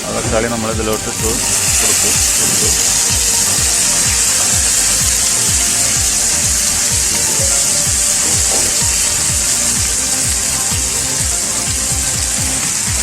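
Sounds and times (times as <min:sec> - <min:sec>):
background music with steady beat: 0:00.0 - 0:13.0
vegetables sizzling in hot oil: 0:00.1 - 0:13.0.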